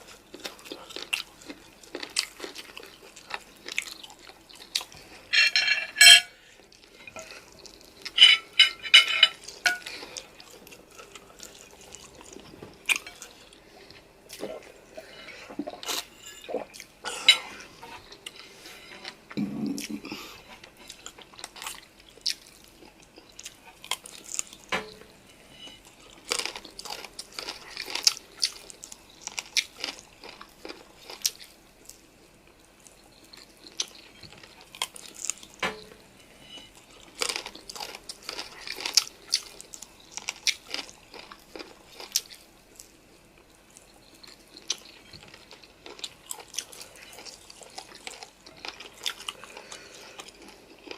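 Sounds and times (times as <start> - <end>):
chewing and mouth sounds: 0.0 - 5.2, 6.7 - 24.7, 25.8 - 32.0, 32.6 - 35.8, 36.6 - 50.9
cutlery clinking against dish: 5.3 - 6.3, 8.2 - 9.9.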